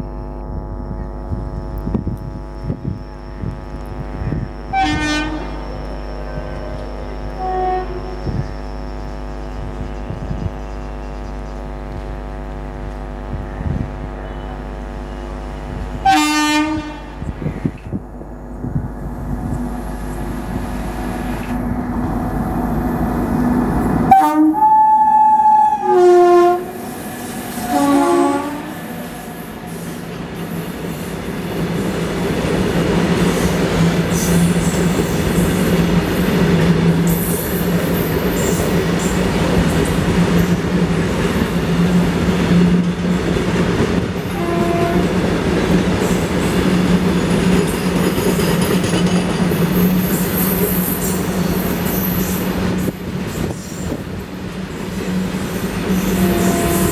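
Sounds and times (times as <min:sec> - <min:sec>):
locomotive horn blasts: 0:03.4 - 0:08.7, 0:13.3 - 0:17.8, 0:19.3 - 0:30.6, 0:44.2 - 0:45.4, 0:55.9 - 0:56.9
train wheels rumbling on rails: 0:09.3 - 0:56.9.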